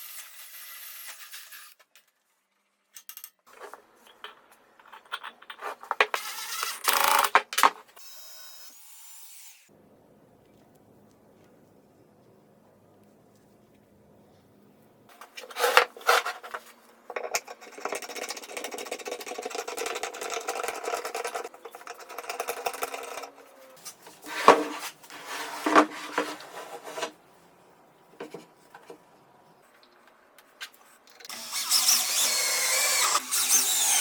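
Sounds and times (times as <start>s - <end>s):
scrapes: 15.1s - 18.0s, 23.4s - 27.3s.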